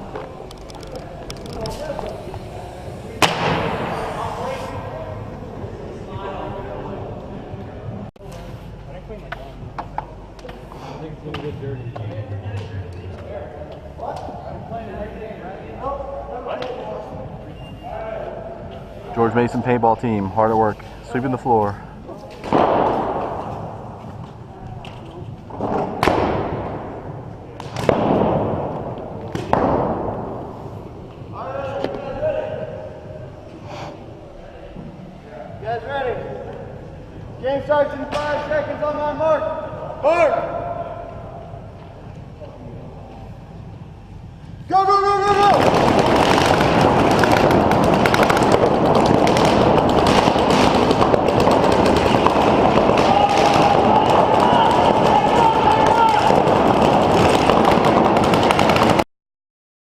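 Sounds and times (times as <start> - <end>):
paintball marker shots echoing: 3.1 - 4.1, 45.4 - 59.0.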